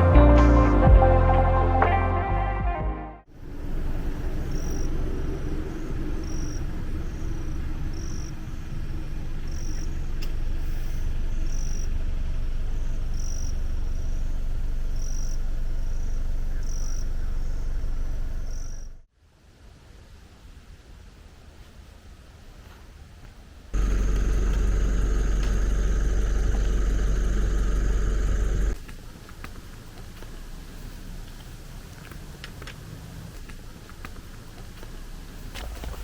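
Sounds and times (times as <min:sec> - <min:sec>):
steady low rumble: 0:03.3 - 0:19.1, 0:23.7 - 0:32.0
high-pitched insect chirp: 0:04.4 - 0:05.0, 0:05.7 - 0:19.0.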